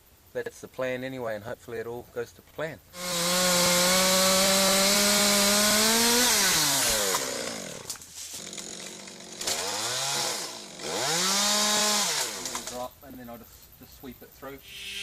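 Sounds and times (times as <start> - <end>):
chainsaw revving: 3.0 - 12.9.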